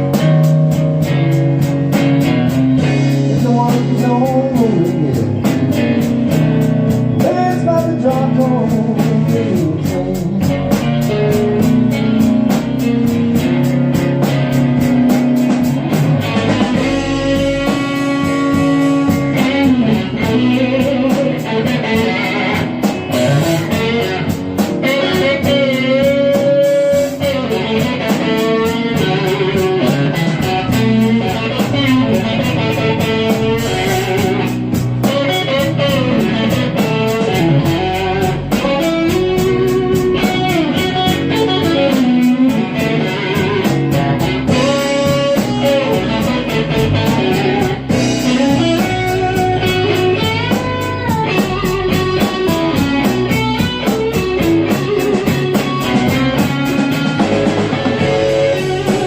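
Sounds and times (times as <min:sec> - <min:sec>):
slow blues electric guitar: 0:00.0 - 0:59.0.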